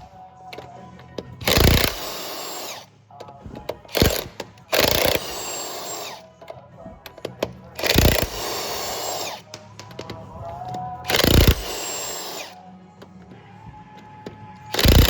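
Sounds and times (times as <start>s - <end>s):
cordless impact wrench: 1.4s - 2.9s, 3.9s - 6.2s, 7.8s - 9.4s, 11.1s - 12.6s, 14.7s - 15.0s.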